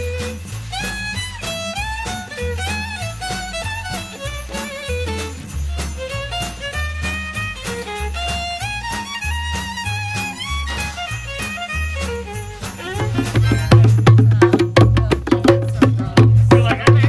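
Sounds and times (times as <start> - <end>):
fiddle-like melody: 0.0 - 14.6
repeating bass line: 13.0 - 17.0.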